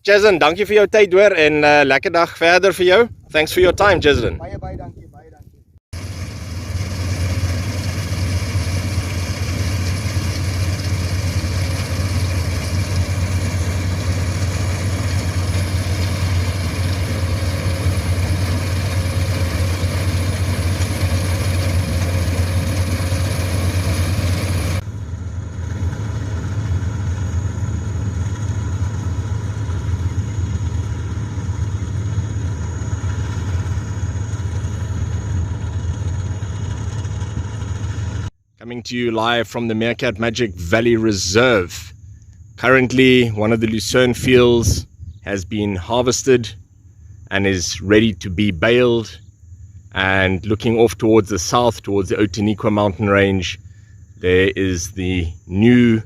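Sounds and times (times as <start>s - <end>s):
loud machinery noise: 6.0s - 38.3s
harvester engine hum: 6.0s - 56.0s.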